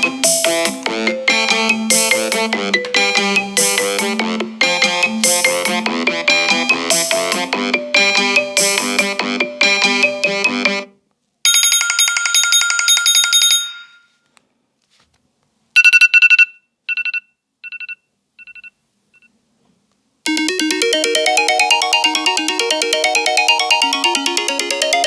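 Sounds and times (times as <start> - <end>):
shimmering electronic ringtone: 0.0 - 10.8, 20.3 - 25.0
two-note electronic beep pattern: 0.0 - 10.8, 20.3 - 25.0
melodic ringtone: 0.0 - 10.9, 20.3 - 25.0.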